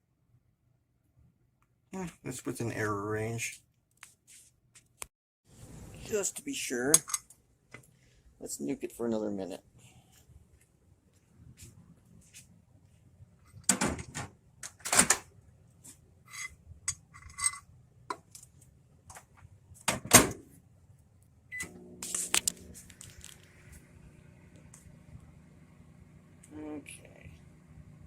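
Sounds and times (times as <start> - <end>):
microwave oven humming: 21.5 - 28.0.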